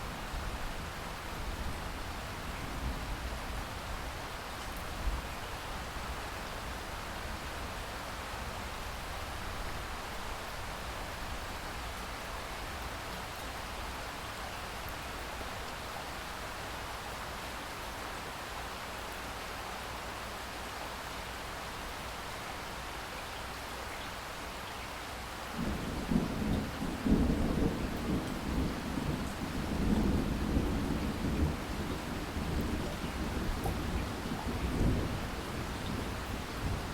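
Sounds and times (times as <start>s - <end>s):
steady rain: 0.0s - 36.9s
thunder rumble: 25.6s - 36.9s.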